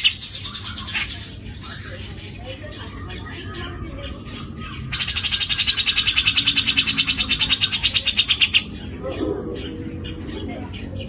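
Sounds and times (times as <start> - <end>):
bulbul harsh rattling call: 4.9 - 8.7.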